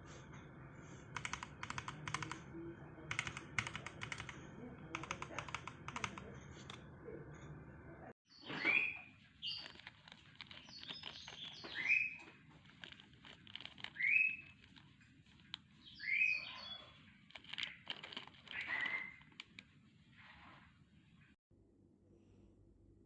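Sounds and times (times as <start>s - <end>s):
bird chirping: 8.3s - 19.6s.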